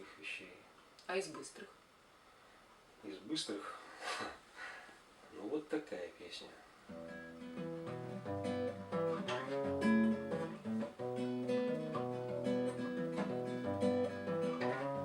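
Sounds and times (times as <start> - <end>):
acoustic guitar plucking: 6.9 - 15.0.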